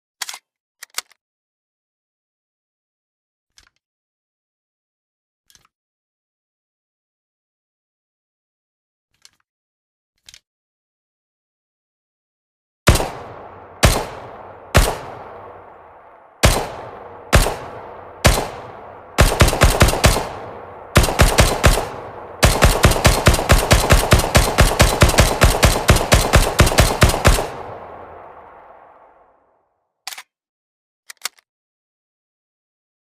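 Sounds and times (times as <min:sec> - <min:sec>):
submachine gun firing: 0:12.9 - 0:29.2.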